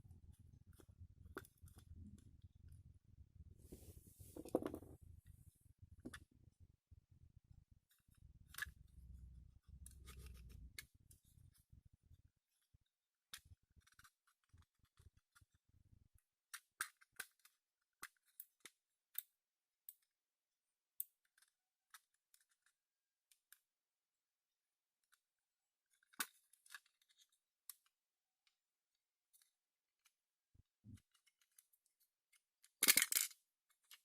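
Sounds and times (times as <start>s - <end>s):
plastic mouse parts clicking: 30.9s - 34.0s.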